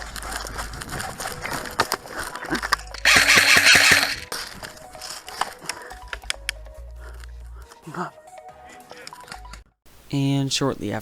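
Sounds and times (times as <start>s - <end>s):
airsoft gun firing full auto: 3.0s - 4.2s.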